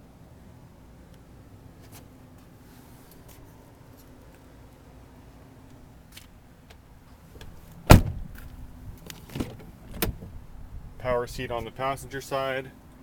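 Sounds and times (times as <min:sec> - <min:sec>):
loud thump: 0:07.9 - 0:08.4.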